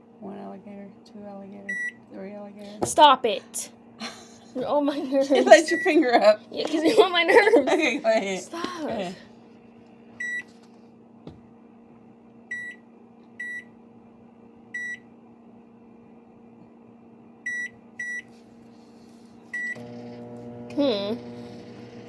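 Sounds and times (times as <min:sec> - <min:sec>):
low steady hum: 0:00.0 - 0:22.0
microwave keypad beeps: 0:01.7 - 0:02.0, 0:10.2 - 0:10.5, 0:12.5 - 0:12.8, 0:13.4 - 0:13.7, 0:14.8 - 0:15.0, 0:17.5 - 0:18.3, 0:19.6 - 0:19.8.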